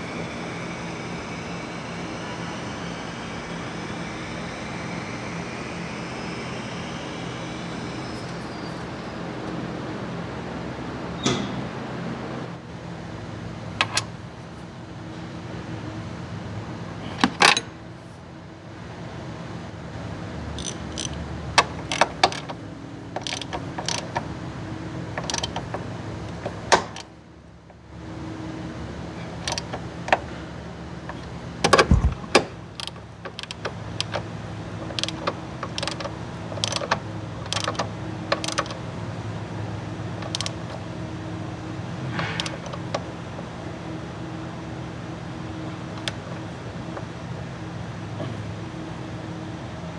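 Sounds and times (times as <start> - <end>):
steady low hum: 0.0 - 49.9
metal tools clicking and knocking: 23.2 - 24.2, 25.2 - 27.1, 34.8 - 38.8, 40.2 - 40.8.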